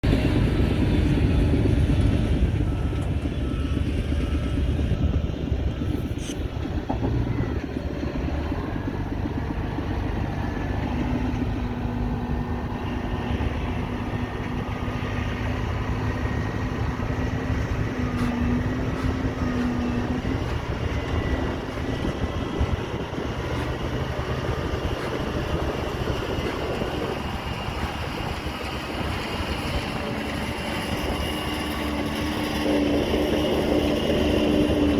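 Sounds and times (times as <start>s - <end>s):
steady motor whine: 0.0s - 34.9s
toy truck motors and gears: 5.7s - 6.8s, 9.6s - 34.9s.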